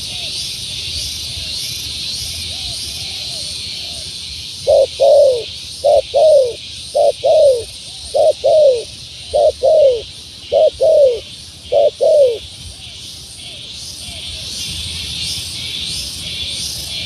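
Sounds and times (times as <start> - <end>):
steady high hiss: 0.0 - 17.0
dove cooing: 2.5 - 12.9.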